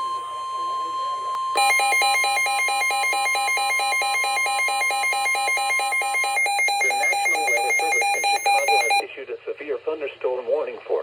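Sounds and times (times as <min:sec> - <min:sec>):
steady high tone: 0:00.0 - 0:09.0
warbling electronic alert tone: 0:01.6 - 0:09.0.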